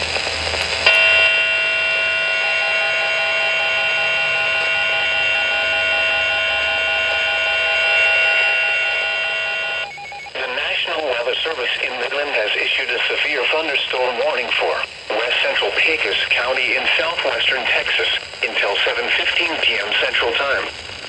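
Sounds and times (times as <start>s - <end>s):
electronic alarm tone: 0.9s - 10.4s.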